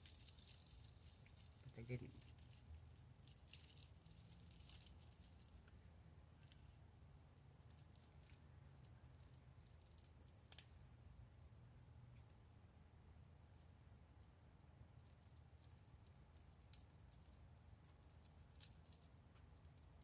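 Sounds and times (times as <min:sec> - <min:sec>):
small objects clicking and rustling: 0:00.0 - 0:05.8, 0:07.6 - 0:10.7, 0:15.0 - 0:20.0
faint low room hum: 0:00.0 - 0:20.0.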